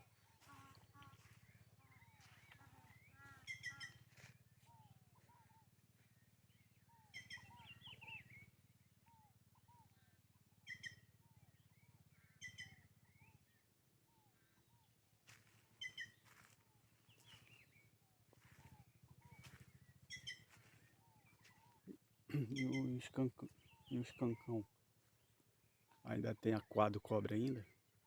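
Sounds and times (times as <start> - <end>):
small soft bird chirps: 0.0 - 26.1
bird warbling: 2.2 - 4.0, 19.2 - 24.4.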